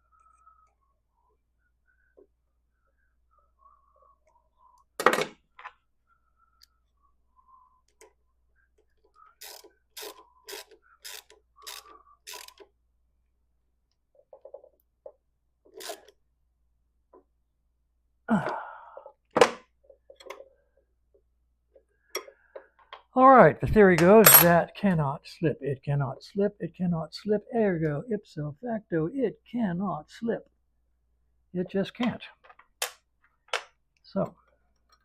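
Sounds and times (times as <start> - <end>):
faint whistling: 6.1 - 7.8.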